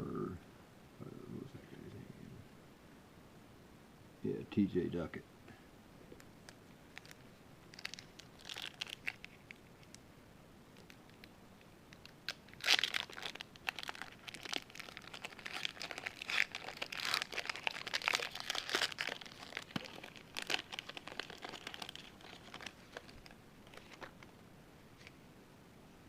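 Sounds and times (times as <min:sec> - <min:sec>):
card pack wrapper crinkling and tearing: 0:06.9 - 0:10.0, 0:12.0 - 0:24.3.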